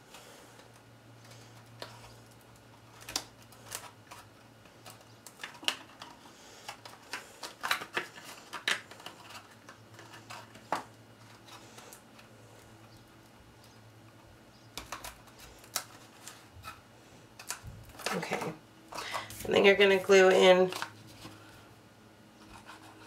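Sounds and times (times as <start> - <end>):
cardstock crinkling and tapping: 1.2 - 12.2, 13.6 - 16.8.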